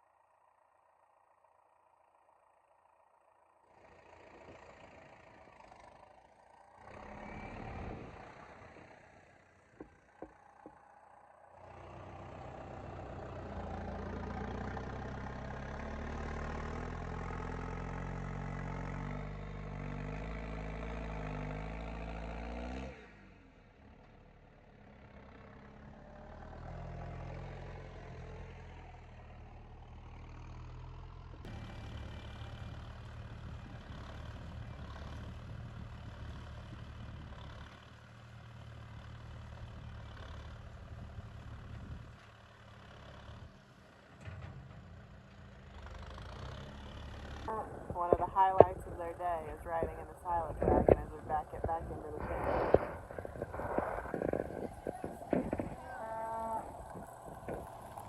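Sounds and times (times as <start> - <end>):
farm vehicle engine running: 0.0 - 22.8, 23.8 - 58.0.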